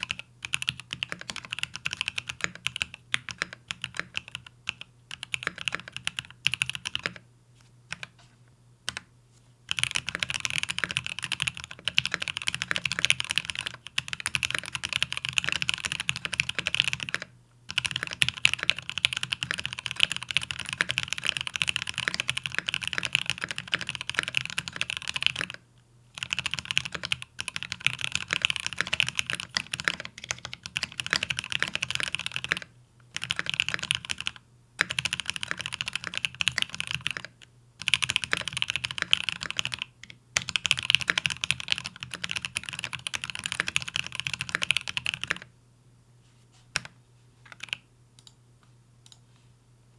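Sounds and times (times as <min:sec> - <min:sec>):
fast typing on mechanical keyboard: 0:00.0 - 0:07.2, 0:07.9 - 0:08.1, 0:09.7 - 0:25.6, 0:26.2 - 0:45.5, 0:47.5 - 0:47.8.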